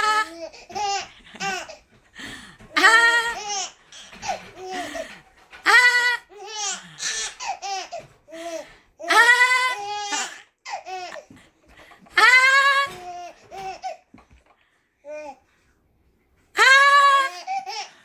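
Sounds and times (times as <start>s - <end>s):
baby laughing and squealing: 2.8s - 8.1s.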